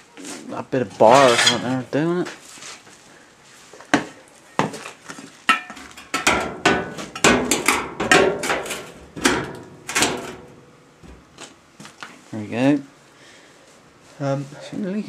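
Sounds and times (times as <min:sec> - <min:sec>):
metal bar clanking on stove door: 0:05.5 - 0:11.3.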